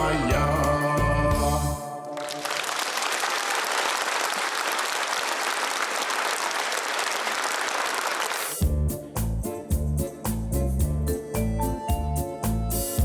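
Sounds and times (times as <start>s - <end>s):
audience applauding: 1.9s - 8.6s.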